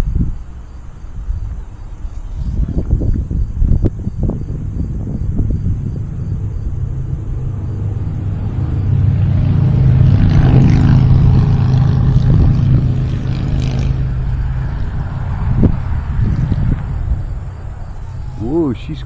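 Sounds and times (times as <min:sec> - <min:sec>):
wind rumble on microphone: 0:00.0 - 0:19.0.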